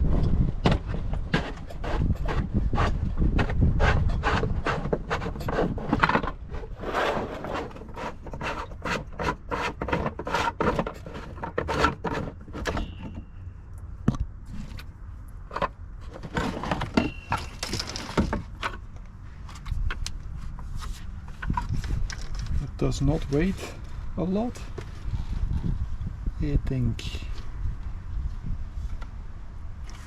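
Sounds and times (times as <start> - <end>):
scraping of hard parts: 0.0 - 13.5, 14.4 - 25.8
short high squeaks: 12.6 - 13.5, 17.0 - 17.9
clicks and knocks of hard parts: 15.5 - 20.2.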